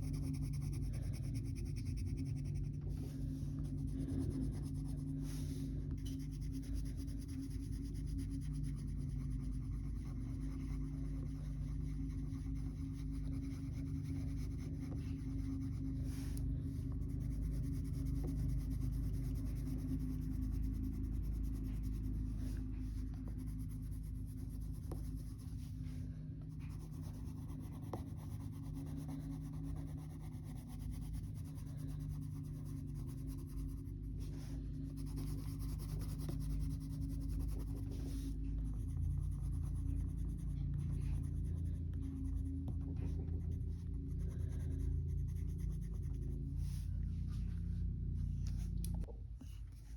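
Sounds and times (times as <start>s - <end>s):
colour pencil scratching on paper: 0.0s - 47.4s
steady low background hum: 0.0s - 49.9s.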